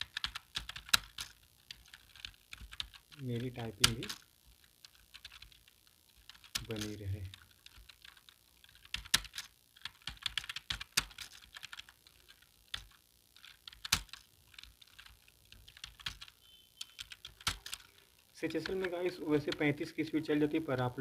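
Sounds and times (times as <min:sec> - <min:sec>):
keyboard typing: 0:00.0 - 0:20.6.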